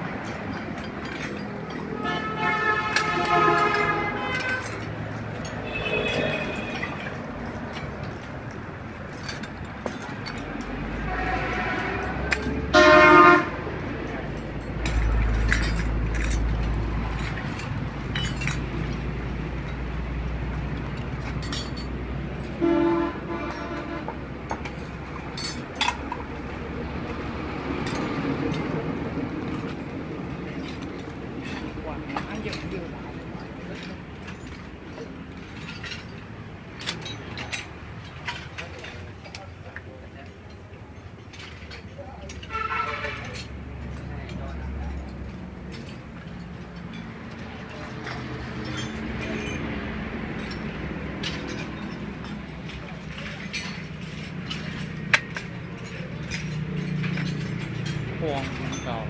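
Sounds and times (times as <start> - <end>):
heavy vehicle rumbling past: 0.0 - 38.2
road traffic: 0.0 - 59.0
vehicle horns honking: 1.9 - 4.9, 5.5 - 7.2, 11.0 - 13.6, 22.5 - 24.2, 42.4 - 43.4.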